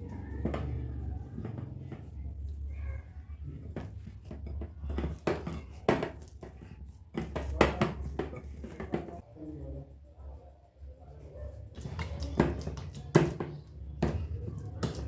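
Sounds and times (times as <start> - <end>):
dough being kneaded in a bowl: 0.0 - 15.0.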